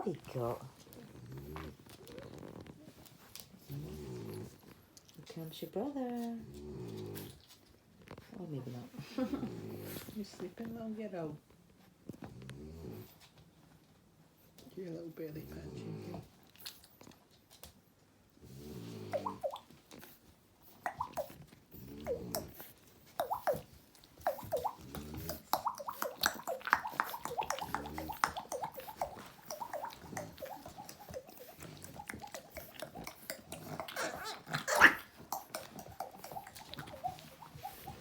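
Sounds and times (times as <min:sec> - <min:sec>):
puppies grunting: 0:20.9 - 0:38.0
puppies squeaking and whining: 0:21.0 - 0:38.0.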